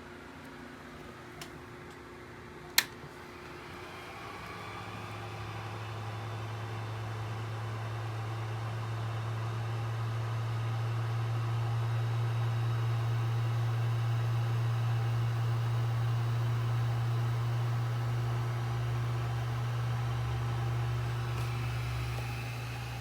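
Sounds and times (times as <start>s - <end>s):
cooling fans humming: 13.0s - 23.0s.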